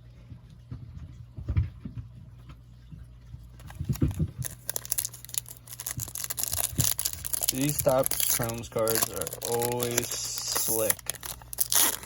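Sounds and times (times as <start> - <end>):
foil wrapper crinkling: 3.6 - 12.0
trading cards being handled: 3.6 - 12.0.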